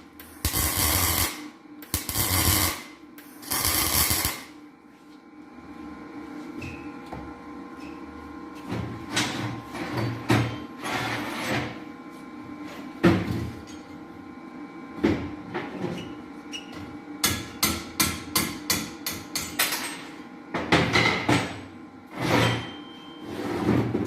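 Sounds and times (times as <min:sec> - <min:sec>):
steady hum: 0:00.0 - 0:15.6.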